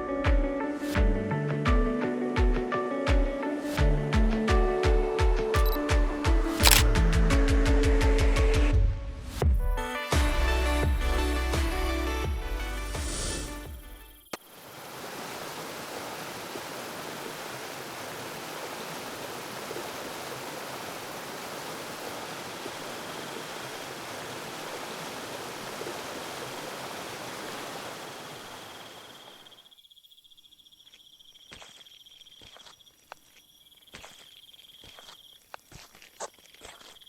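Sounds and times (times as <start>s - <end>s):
flowing water rushing: 14.5s - 29.4s
high insect trill: 28.1s - 37.0s.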